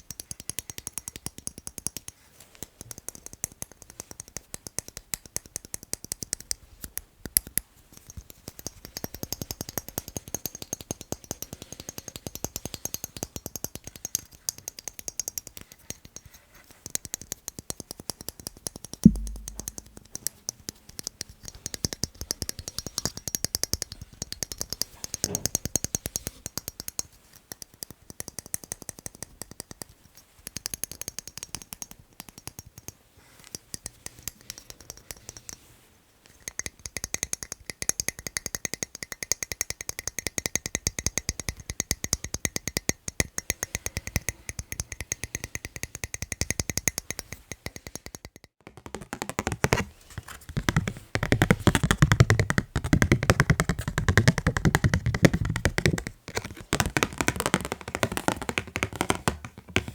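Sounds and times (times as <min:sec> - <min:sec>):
fast tapping on objects: 0:19.0 - 0:20.6, 0:46.1 - 0:59.9.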